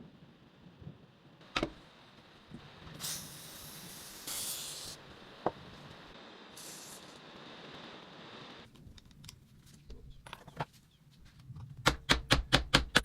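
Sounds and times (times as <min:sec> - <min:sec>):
hissing spray bursts: 0:02.9 - 0:05.1, 0:05.8 - 0:07.3.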